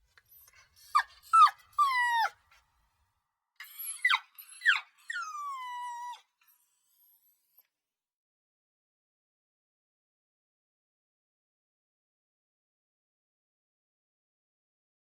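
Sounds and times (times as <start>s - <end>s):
puppy whining cries: 0.3s - 2.4s, 3.6s - 7.2s
puppy yelps: 0.3s - 2.4s, 3.6s - 7.2s.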